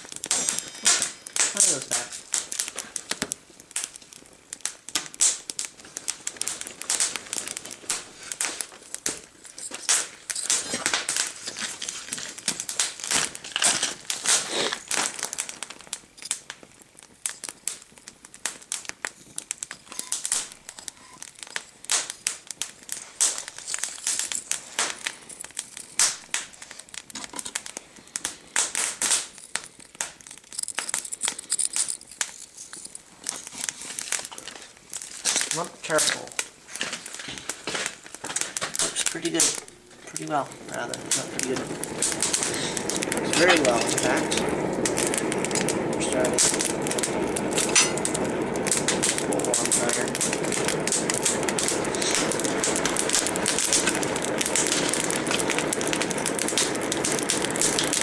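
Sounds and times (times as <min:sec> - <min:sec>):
paper and kindling crackling: 0:00.0 - 0:58.0.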